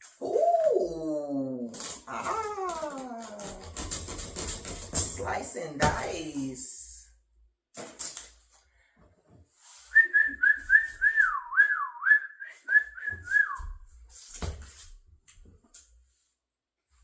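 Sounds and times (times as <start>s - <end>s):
clicks and rustling of parts: 7.8s - 8.6s
person whistling a tune: 9.9s - 13.8s.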